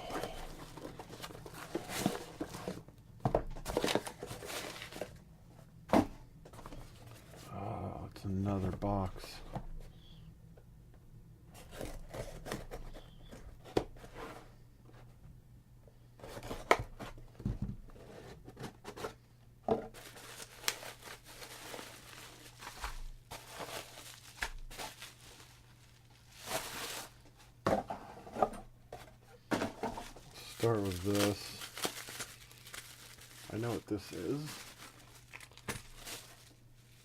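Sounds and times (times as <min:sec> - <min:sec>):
packing material rustling: 0:03.6 - 0:05.2, 0:20.0 - 0:27.4, 0:29.8 - 0:37.0.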